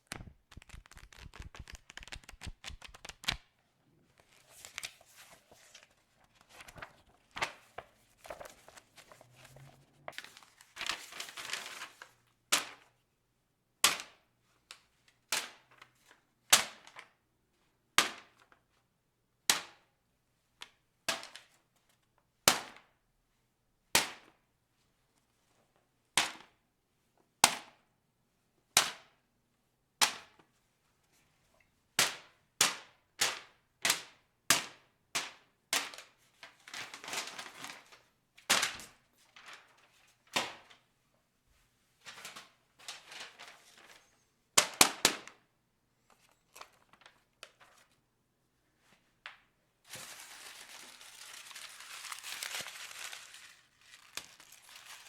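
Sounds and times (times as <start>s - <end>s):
paper rustling: 0.0s - 3.4s, 4.1s - 12.2s, 42.1s - 44.1s, 49.9s - 55.0s
paper snapping: 0.0s - 3.4s.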